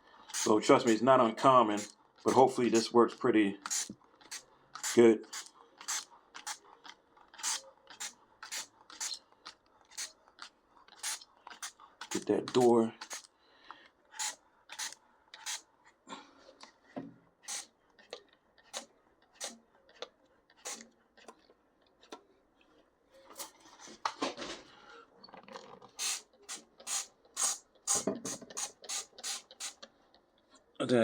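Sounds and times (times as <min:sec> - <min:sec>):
trigger spray bottle spritzing: 0:00.3 - 0:01.0, 0:01.7 - 0:02.9, 0:03.6 - 0:13.3, 0:14.1 - 0:15.6, 0:17.4 - 0:17.7, 0:18.6 - 0:19.6, 0:20.6 - 0:20.9, 0:25.9 - 0:29.8.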